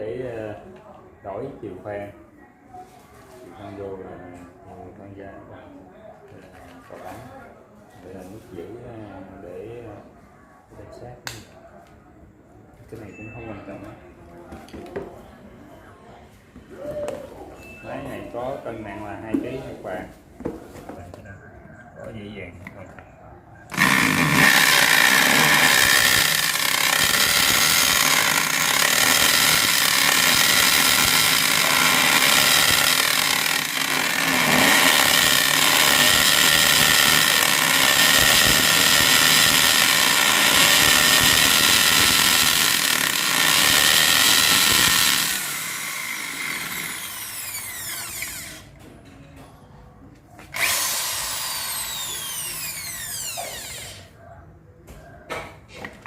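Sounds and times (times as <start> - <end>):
hammer drill running: 23.7 - 48.6, 50.5 - 54.0.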